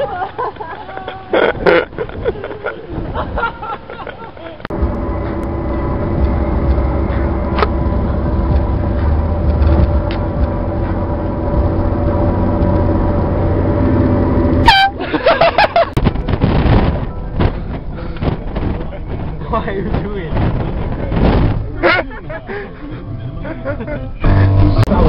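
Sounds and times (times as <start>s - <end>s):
voices: 0.0s - 4.7s
low rumble: 4.7s - 25.0s
air horn blaring: 12.0s - 15.0s, 24.2s - 25.0s.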